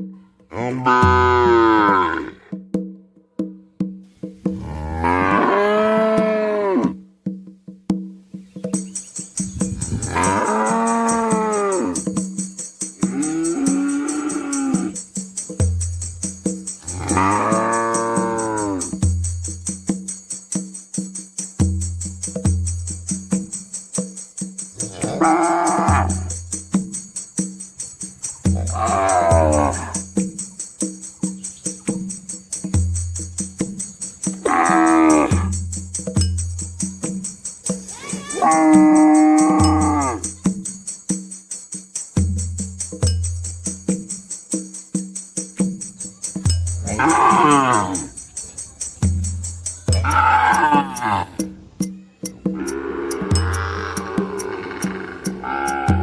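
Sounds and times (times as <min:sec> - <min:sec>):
background music with tambourine: 0:00.0 - 0:56.0
cow moo: 0:00.5 - 0:02.5, 0:04.6 - 0:07.0, 0:09.9 - 0:12.0, 0:13.0 - 0:15.0, 0:16.9 - 0:18.9, 0:24.8 - 0:26.3, 0:28.6 - 0:30.0, 0:34.4 - 0:35.5, 0:38.0 - 0:40.3, 0:46.8 - 0:48.2, 0:50.0 - 0:51.4, 0:52.6 - 0:56.0.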